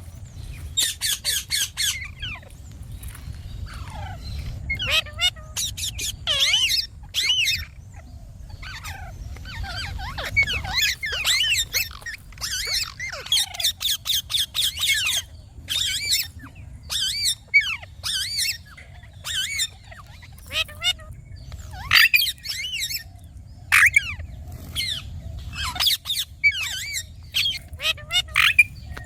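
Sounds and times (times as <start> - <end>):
low rumble: 0.0 - 13.2
parrot squawking calls: 0.8 - 2.6, 3.6 - 23.1, 23.7 - 29.0.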